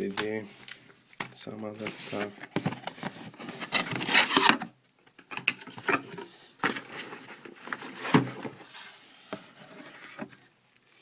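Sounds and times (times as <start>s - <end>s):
box rustling: 1.8s - 10.5s.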